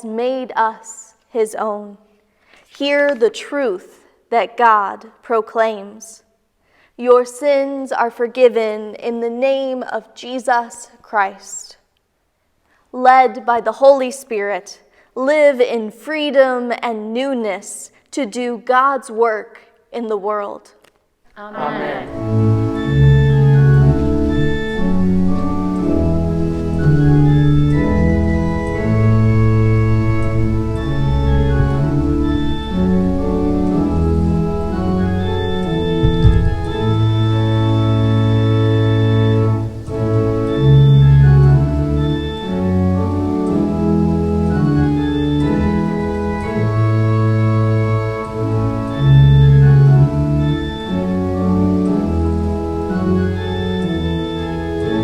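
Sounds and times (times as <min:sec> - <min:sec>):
organ playing a hymn: 0:21.6 - 0:55.0.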